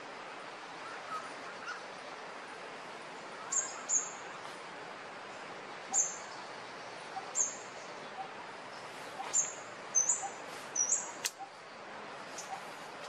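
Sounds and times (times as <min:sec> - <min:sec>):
outdoor hiss: 0:00.0 - 0:13.0
bird chirping: 0:03.2 - 0:04.5, 0:05.8 - 0:11.6, 0:12.3 - 0:12.8
sharp click: 0:11.2 - 0:11.4.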